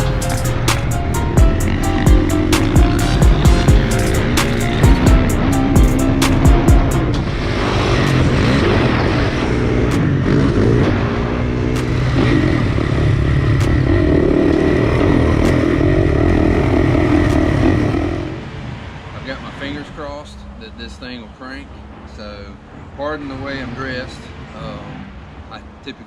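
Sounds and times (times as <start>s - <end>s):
motorcycle engine revving: 0.0s - 18.6s.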